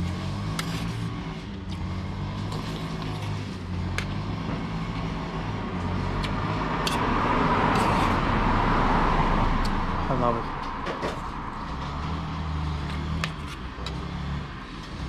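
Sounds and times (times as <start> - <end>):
vehicle engine humming: 0.0 - 15.0.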